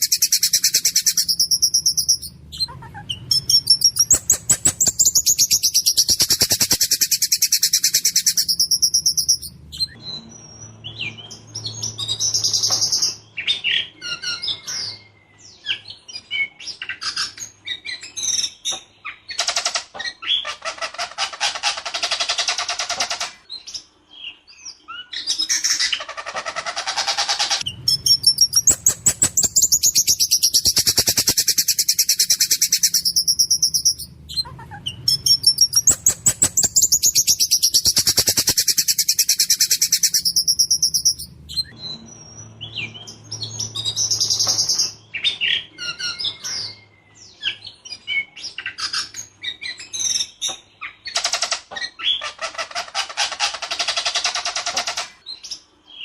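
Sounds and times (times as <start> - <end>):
thrush singing trills: 0.0 - 15.3, 27.1 - 47.3.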